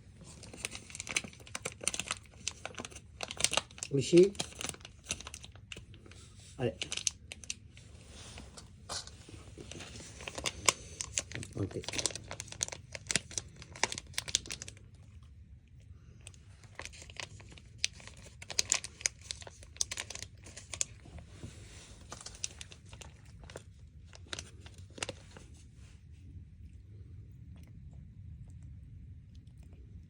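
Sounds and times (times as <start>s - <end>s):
plastic snack packet crinkling: 0.2s - 7.9s, 8.6s - 15.2s, 16.2s - 21.3s, 21.9s - 25.6s.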